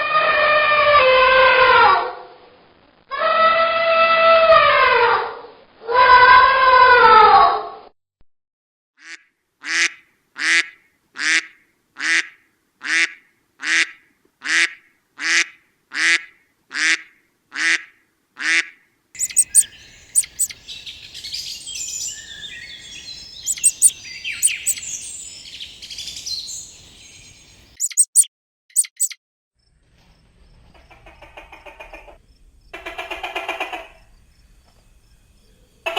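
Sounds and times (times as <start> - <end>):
duck quacking: 19.2 - 20.6, 22.7 - 24.9, 27.8 - 29.2
birds chirping and twittering: 19.2 - 29.2.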